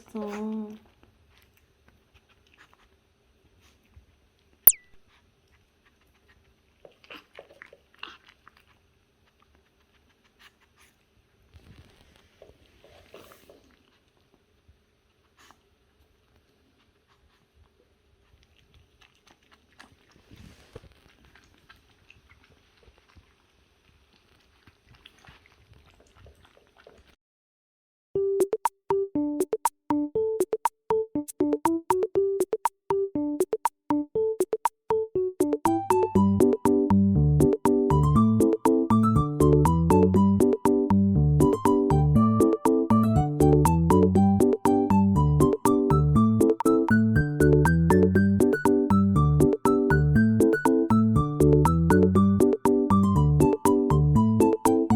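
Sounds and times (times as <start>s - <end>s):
puppy chewing food: 0.1s - 27.2s
sharp clink: 4.7s - 5.0s
dog crunching kibble: 5.8s - 10.6s, 18.2s - 26.9s.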